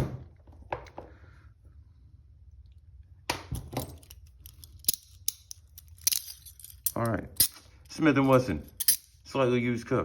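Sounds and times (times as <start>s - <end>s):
handcuffs clicking and clinking: 3.6s - 9.2s.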